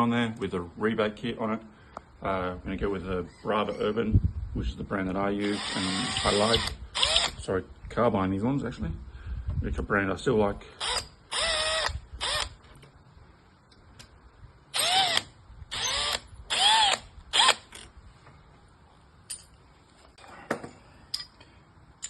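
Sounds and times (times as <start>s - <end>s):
cordless drill motor whine: 5.5s - 7.4s, 10.8s - 12.6s, 14.8s - 17.7s.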